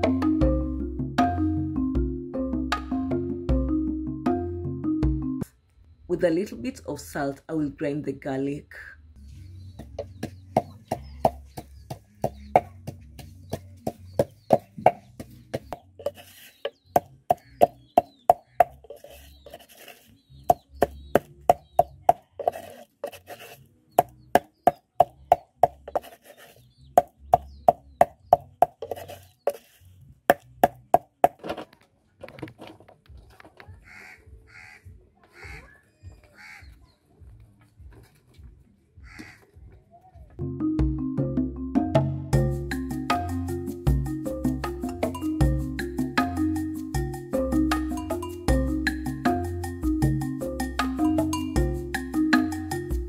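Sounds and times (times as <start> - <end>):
pestle knocking in mortar: 9.8 - 19.7, 20.5 - 23.4, 24.0 - 26.3, 27.0 - 29.7.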